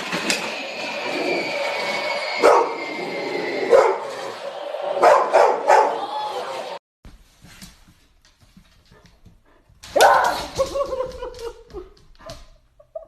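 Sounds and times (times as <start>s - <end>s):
dog barking: 3.7s - 4.1s, 5.0s - 6.0s.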